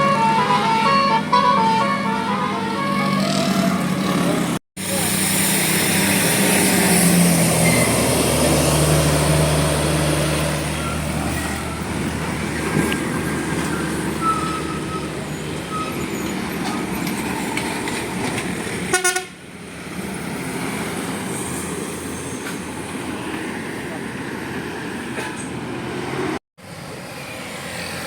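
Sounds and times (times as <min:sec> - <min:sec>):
musical bus horn: 0:00.0 - 0:04.0, 0:18.9 - 0:19.4
bus noise: 0:00.0 - 0:28.0.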